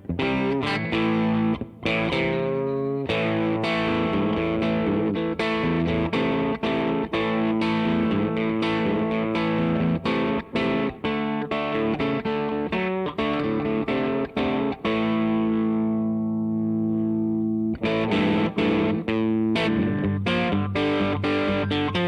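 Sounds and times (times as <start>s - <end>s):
distorted electric guitar: 0.0s - 22.0s.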